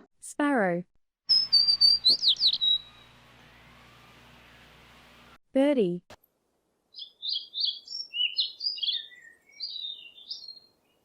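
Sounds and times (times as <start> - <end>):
songbird singing: 1.3 - 5.0, 6.9 - 11.0.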